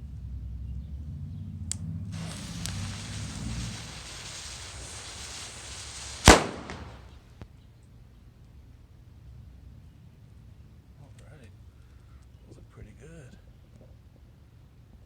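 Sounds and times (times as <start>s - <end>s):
firecracker bang: 2.1s - 7.3s
fuse hissing: 2.2s - 7.1s.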